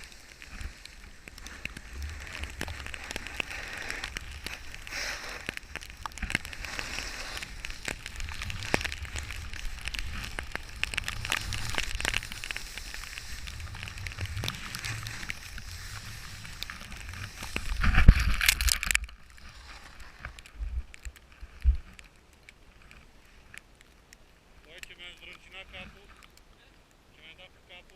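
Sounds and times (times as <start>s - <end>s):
snowboard sliding over snow: 0.0s - 22.0s.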